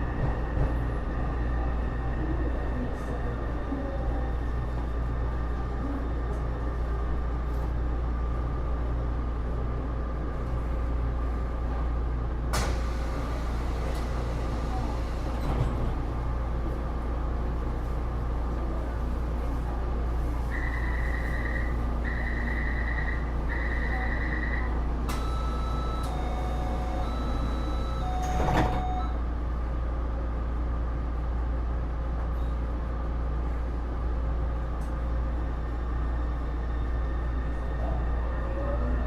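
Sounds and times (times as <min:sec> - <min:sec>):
train car low hum: 0:00.0 - 0:39.0
sliding doors shutting: 0:12.5 - 0:16.0, 0:25.1 - 0:29.1
door warning beeps: 0:20.6 - 0:29.2.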